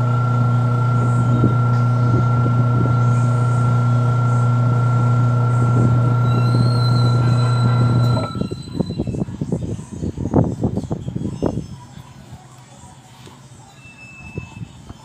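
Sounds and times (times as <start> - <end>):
washing machine spin motor: 0.0 - 9.3.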